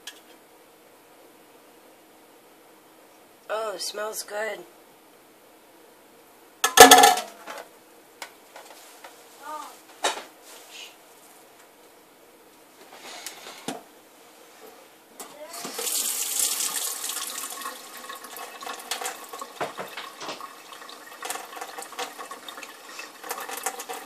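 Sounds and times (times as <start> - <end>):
tap water splashing into sink: 15.6 - 24.0.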